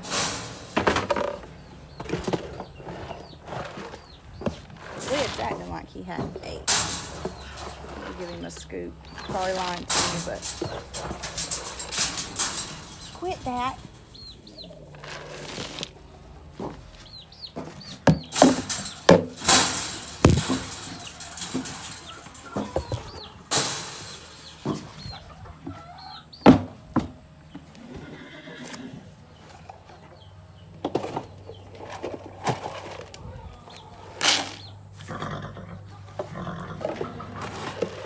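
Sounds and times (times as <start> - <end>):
knocks and bangs: 4.0 - 14.8, 16.6 - 25.8.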